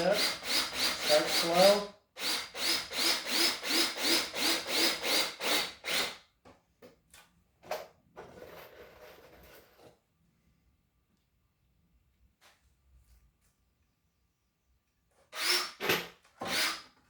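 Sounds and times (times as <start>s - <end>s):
drill driver pulsing: 0.0s - 6.2s, 15.4s - 16.8s.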